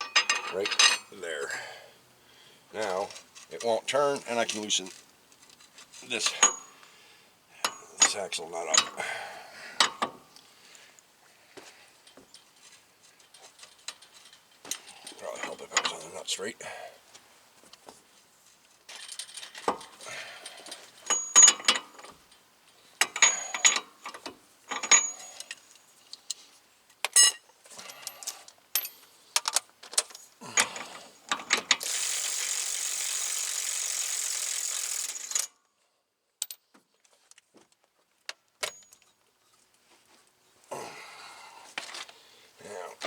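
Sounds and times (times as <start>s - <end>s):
metal tools clanking: 0.0s - 1.4s, 5.6s - 6.8s, 7.6s - 9.0s, 13.3s - 16.2s, 18.9s - 22.2s, 23.0s - 25.7s.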